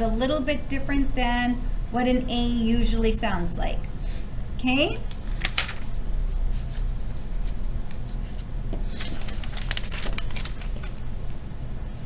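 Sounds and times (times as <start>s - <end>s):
low electrical hum: 0.0s - 12.0s
rustling: 5.0s - 11.5s.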